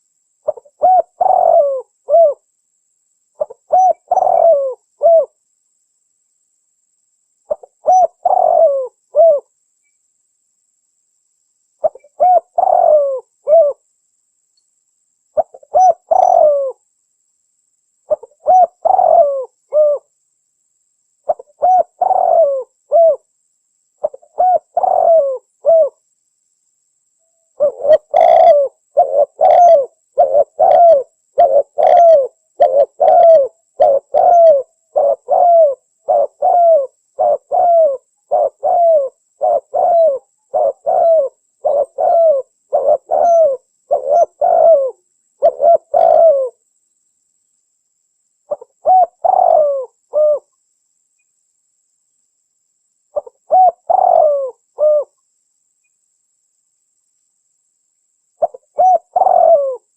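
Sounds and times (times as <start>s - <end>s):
dove cooing: 0.0s - 2.4s, 3.4s - 5.4s, 7.5s - 9.5s, 11.8s - 13.8s, 15.4s - 16.8s, 18.1s - 20.1s, 21.2s - 23.3s, 24.0s - 26.0s, 27.6s - 46.6s, 48.5s - 50.5s, 53.2s - 55.2s, 58.4s - 59.9s.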